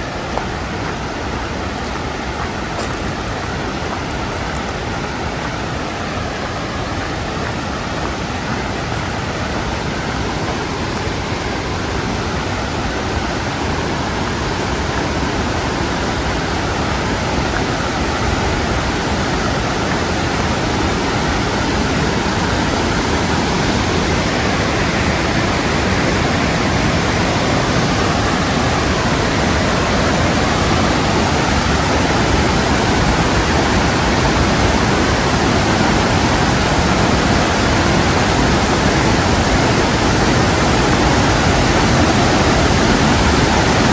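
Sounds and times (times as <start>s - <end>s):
waterfall roar: 0.0s - 43.9s.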